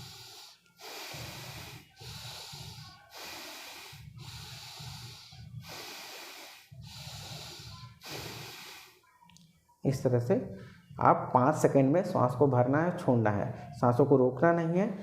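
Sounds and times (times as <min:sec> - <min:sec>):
person breathing forcefully through nose: 0:00.0 - 0:09.1.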